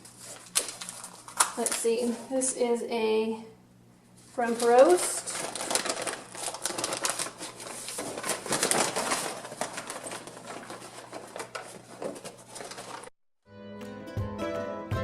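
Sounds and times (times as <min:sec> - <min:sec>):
plastic wrapping crackling: 0:00.0 - 0:02.1, 0:04.4 - 0:13.1.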